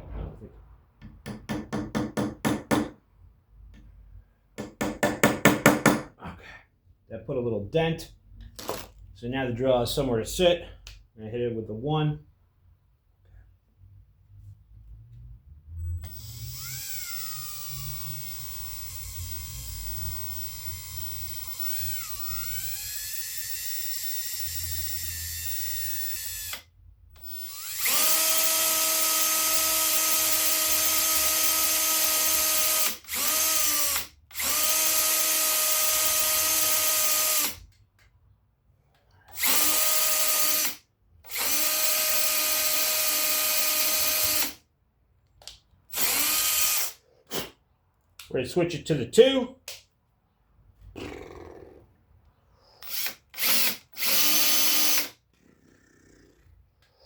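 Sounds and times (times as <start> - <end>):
electric drill boring into wood: 16.0 - 37.6, 39.4 - 44.6, 45.9 - 47.0, 52.8 - 55.2.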